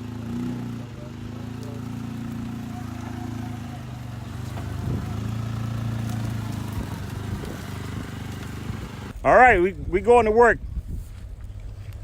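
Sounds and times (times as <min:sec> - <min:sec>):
vehicle engine running at low revs: 0:00.0 - 0:09.2.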